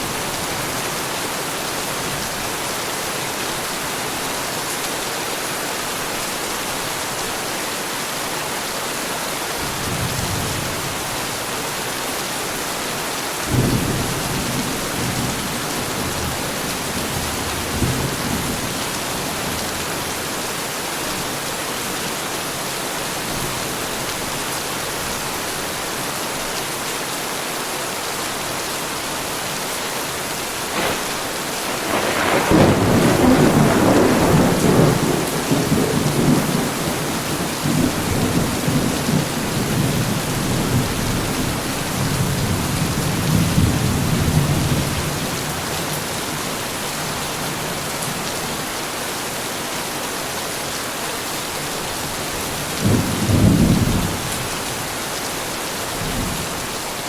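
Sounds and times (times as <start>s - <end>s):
heavy rain falling: 0.0s - 57.0s
thunderclap and deep rumble: 30.7s - 40.9s.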